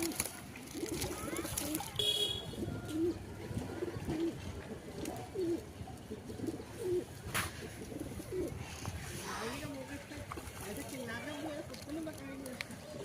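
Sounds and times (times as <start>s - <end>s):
pigeons cooing: 0.0s - 9.3s.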